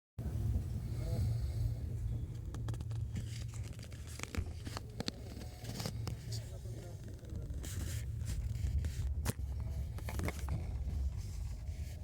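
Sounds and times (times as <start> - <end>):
low train rumble: 0.2 - 12.0
sharp clicks and rattles: 2.3 - 11.6.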